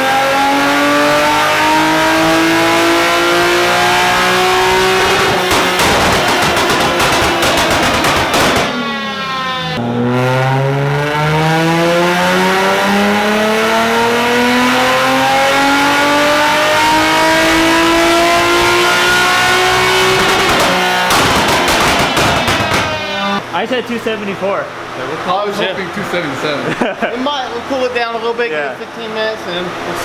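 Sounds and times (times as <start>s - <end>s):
car engine revving on a dyno: 0.0s - 23.4s.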